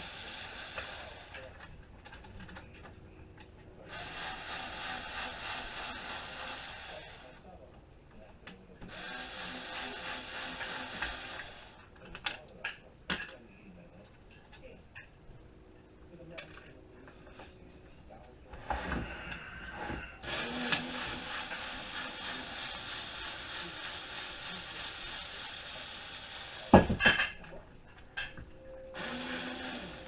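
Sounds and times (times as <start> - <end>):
power screwdriver running: 0.0 - 1.4, 3.9 - 7.3, 8.9 - 11.8, 20.2 - 26.7, 29.0 - 30.0.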